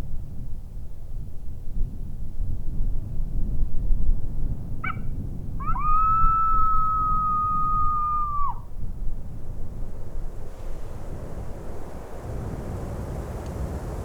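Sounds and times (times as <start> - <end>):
wind rumbling on microphone: 0.0 - 14.0
coyote howl predator call: 5.6 - 8.7.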